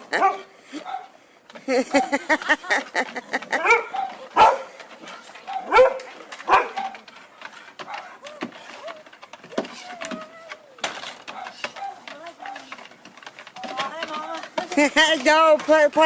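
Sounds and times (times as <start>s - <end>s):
dog barking and yelping: 0.0s - 1.2s, 3.5s - 4.8s, 5.4s - 7.1s, 7.8s - 9.0s, 9.7s - 12.8s
dog whining: 7.9s - 12.7s.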